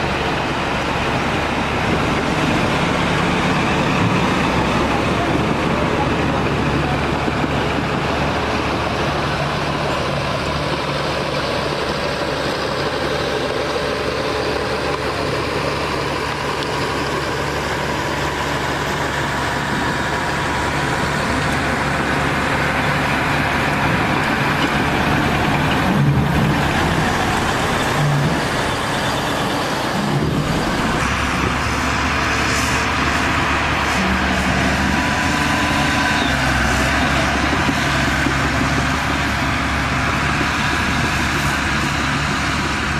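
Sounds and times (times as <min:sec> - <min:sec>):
heavy diesel machinery engine running: 0:00.0 - 0:42.9.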